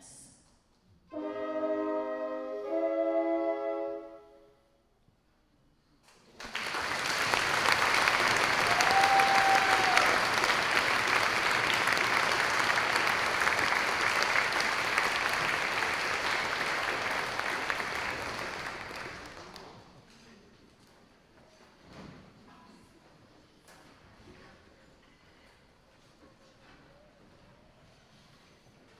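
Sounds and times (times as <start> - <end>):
audience applause: 6.4 - 19.8
crowd whoop: 8.1 - 11.2.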